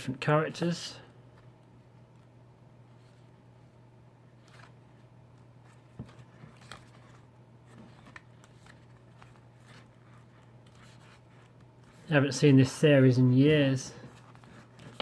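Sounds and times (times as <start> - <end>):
low steady hum: 0.0 - 15.0
pages rustling: 2.9 - 12.4, 14.0 - 15.0.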